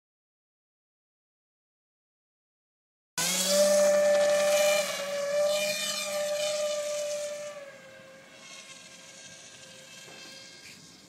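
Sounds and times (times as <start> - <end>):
model airplane motor whine: 3.2 - 11.0.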